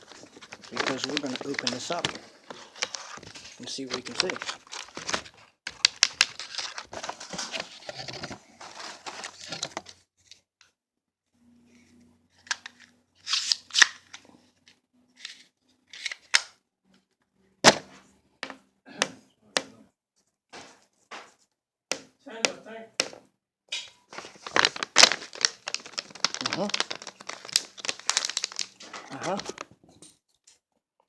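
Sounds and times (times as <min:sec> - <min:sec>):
rustling and crinkling: 0:00.0 - 0:10.4, 0:24.0 - 0:30.2.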